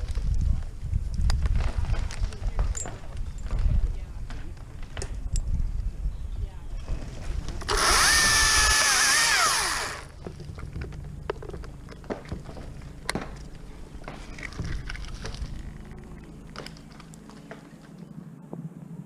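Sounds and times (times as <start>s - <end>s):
chainsaw running at full throttle: 7.7s - 10.1s
wood knocking and cracking: 10.1s - 15.9s.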